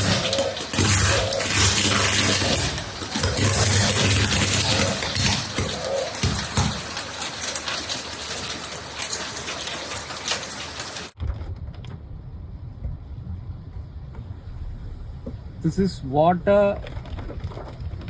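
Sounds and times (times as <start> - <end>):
heavy rain on hard surfaces: 0.0 - 12.0, 14.9 - 18.0
low rumble: 11.2 - 18.0.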